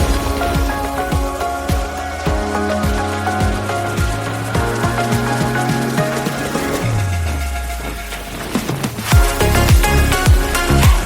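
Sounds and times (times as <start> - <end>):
steady kick drum beat: 0.0 - 6.5, 9.1 - 11.0
upbeat electronic music: 0.0 - 11.0.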